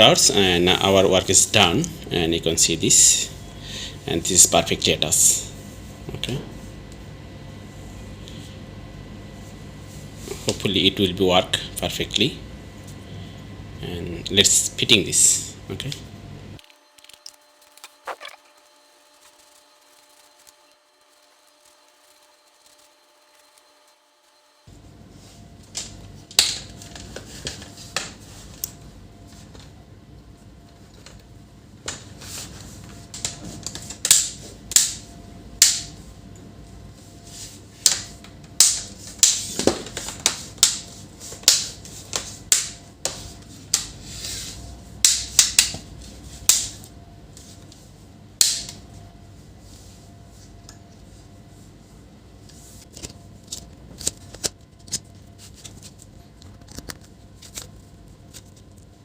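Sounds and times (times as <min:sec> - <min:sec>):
plastic laptop parts clicking: 0:16.6 - 0:20.7.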